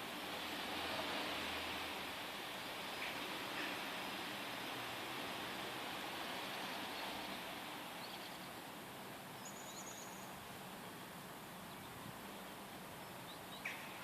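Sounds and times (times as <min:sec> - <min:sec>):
outdoor background hiss: 0:00.0 - 0:14.0
faint bird chirps: 0:08.0 - 0:08.6, 0:09.3 - 0:12.1, 0:13.0 - 0:14.0.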